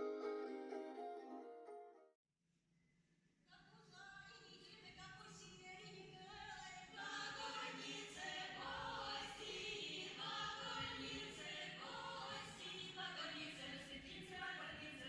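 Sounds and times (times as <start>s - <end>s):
choir singing held notes: 7.0s - 13.6s.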